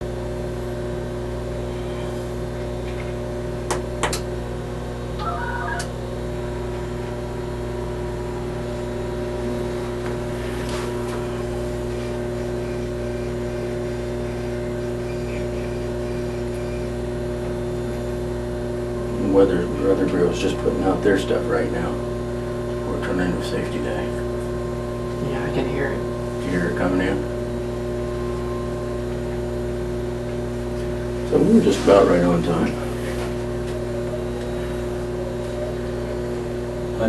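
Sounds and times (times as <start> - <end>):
electrical mains hum: 0.0 - 37.0
electronic beeping tones: 5.2 - 5.9.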